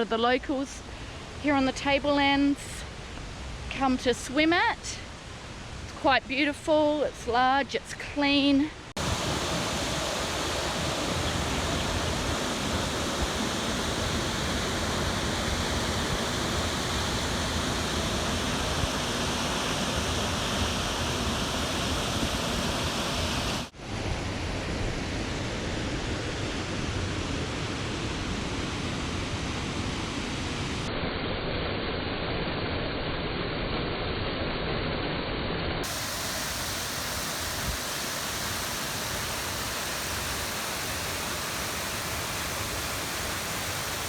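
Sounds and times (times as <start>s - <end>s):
rush of falling water: 8.9s - 24.1s, 35.8s - 44.0s.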